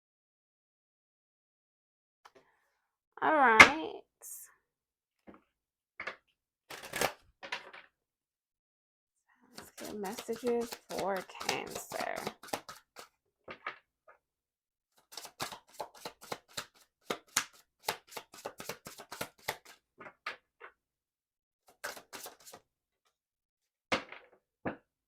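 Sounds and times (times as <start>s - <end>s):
cards being shuffled: 9.6s - 13.1s, 15.0s - 19.8s, 21.8s - 22.6s.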